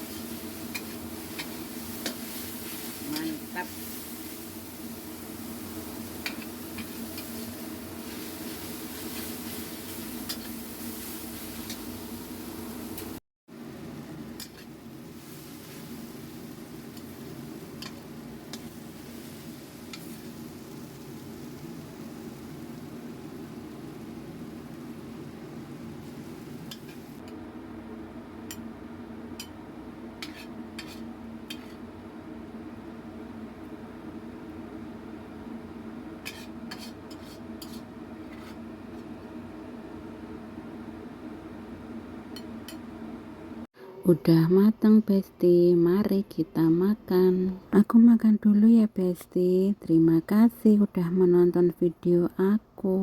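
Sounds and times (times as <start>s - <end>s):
food sizzling in a pan: 0.0s - 27.3s, 28.4s - 32.0s, 35.7s - 39.6s.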